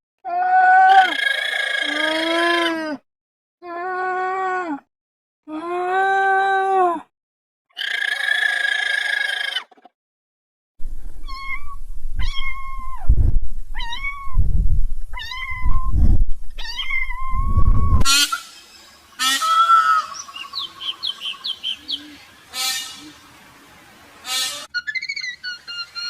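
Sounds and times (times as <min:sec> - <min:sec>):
cat meowing: 0:11.2 - 0:13.1, 0:13.8 - 0:14.4, 0:15.2 - 0:15.9, 0:16.6 - 0:17.6.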